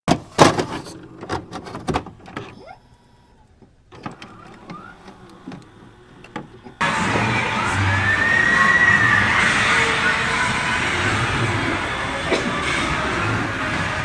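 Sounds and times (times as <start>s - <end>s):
brief rising tone: 6.8s - 14.0s.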